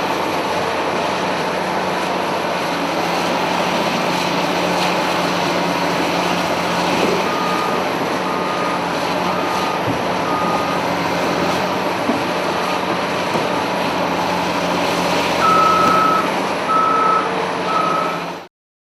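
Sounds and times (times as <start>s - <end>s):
diesel engine running: 0.0s - 18.5s
reversing alarm beeping: 7.2s - 10.9s, 15.4s - 18.3s.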